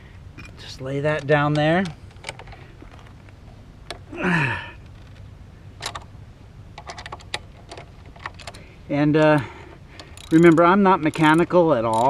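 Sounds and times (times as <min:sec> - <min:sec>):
ratchet wrench clicking: 0:09.2 - 0:12.0
metallic clicks of hand tools: 0:10.0 - 0:12.0.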